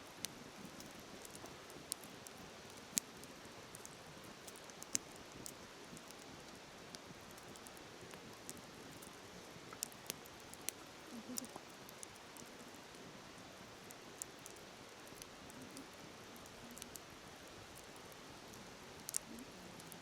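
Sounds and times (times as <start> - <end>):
bonfire crackling and popping: 0.1 - 20.0.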